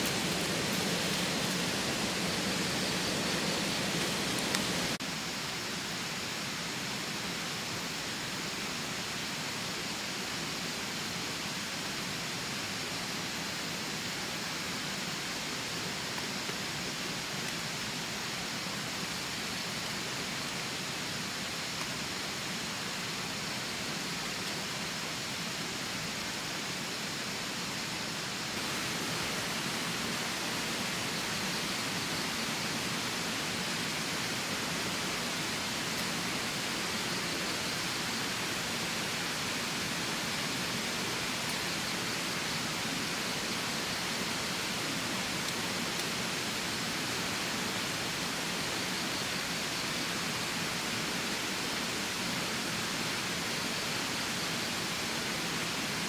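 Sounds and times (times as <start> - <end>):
water rushing: 0.0 - 5.0.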